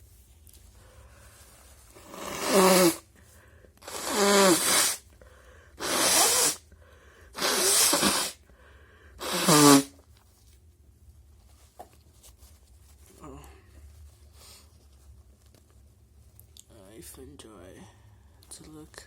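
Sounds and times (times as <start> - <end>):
person blowing nose: 1.9 - 3.1, 3.8 - 5.1, 5.7 - 6.7, 7.3 - 8.4, 9.2 - 10.0.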